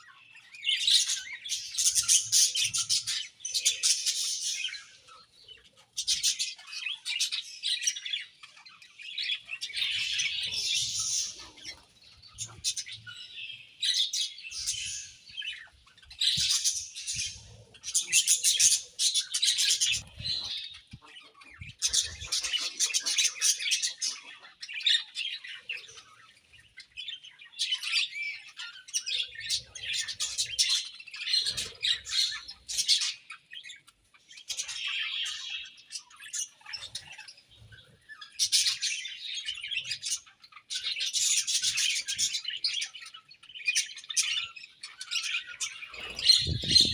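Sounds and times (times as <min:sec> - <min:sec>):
budgerigars chirping and warbling: 0:00.0 - 0:46.9.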